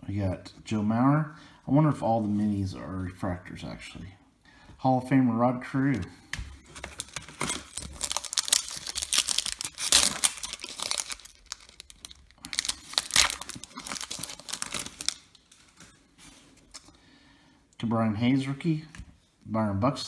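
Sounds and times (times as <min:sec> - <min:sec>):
foil wrapper crinkling and tearing: 0:06.3 - 0:16.9.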